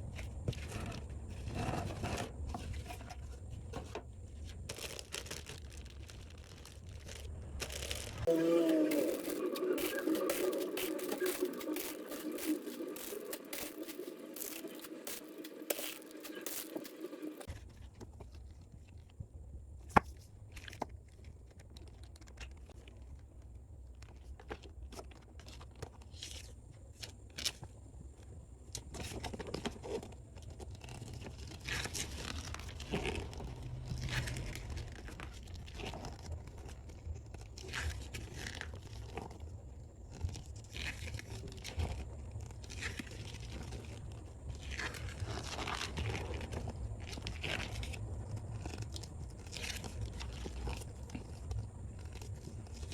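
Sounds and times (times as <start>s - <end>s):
plastic wrap crinkling and tearing: 4.2s - 17.5s, 29.2s - 52.9s.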